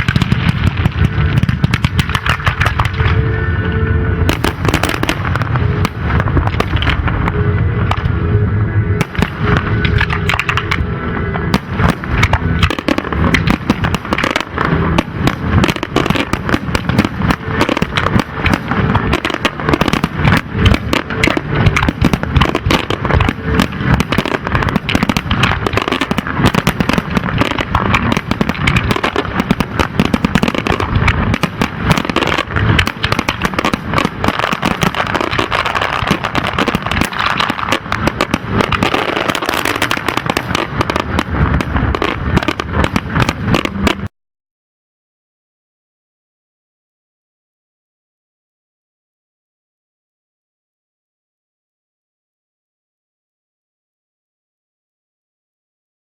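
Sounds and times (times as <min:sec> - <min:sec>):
fireworks bangs and crackling: 0:00.0 - 0:44.1.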